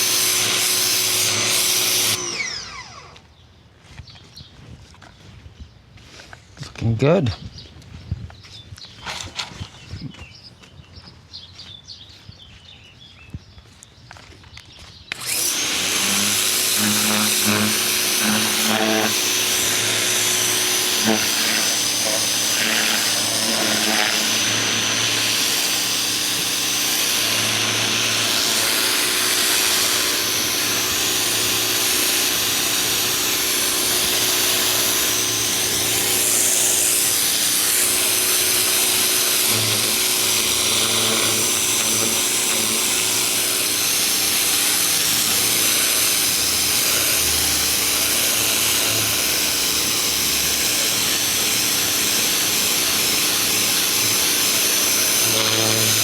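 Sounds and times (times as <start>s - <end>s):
pressure washer spraying: 0.0s - 2.2s, 15.2s - 56.0s.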